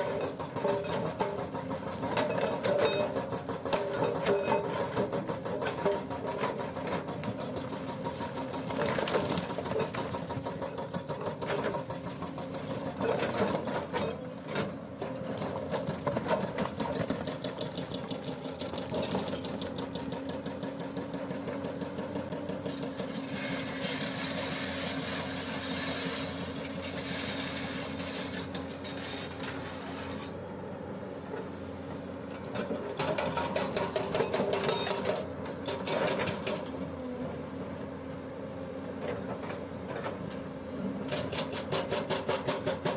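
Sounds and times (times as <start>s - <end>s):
diesel engine running under load: 0.0s - 41.2s.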